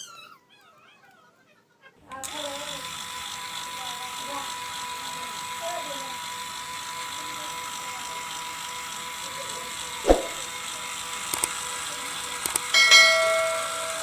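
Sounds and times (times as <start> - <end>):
small electric motor buzzing: 2.2 - 12.8.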